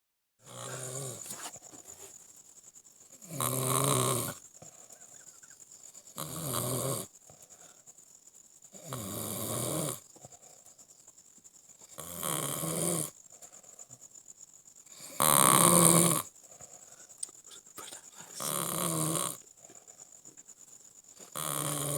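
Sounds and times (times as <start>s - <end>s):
rattling snores: 0.4s - 2.2s, 3.2s - 4.4s, 6.1s - 7.1s, 8.8s - 10.1s, 11.9s - 13.2s, 14.9s - 16.3s, 17.6s - 19.4s, 21.2s - 21.9s.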